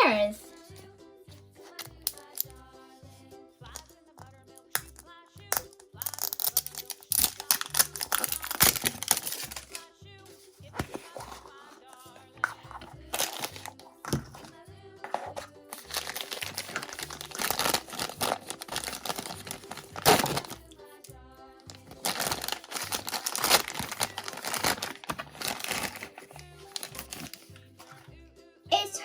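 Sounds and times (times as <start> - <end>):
background music: 0.0 - 29.0
sharp plastic crack: 4.8 - 9.8, 15.8 - 20.6, 21.7 - 27.4
plastic packaging crinkling: 6.0 - 9.8, 12.4 - 14.5, 15.1 - 20.6, 21.7 - 28.0.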